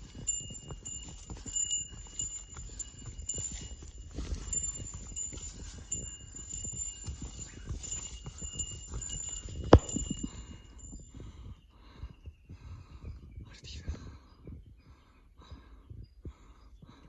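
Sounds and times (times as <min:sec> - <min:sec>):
footsteps on rocky trail: 0:00.0 - 0:11.1
wind buffeting microphone: 0:00.0 - 0:11.5.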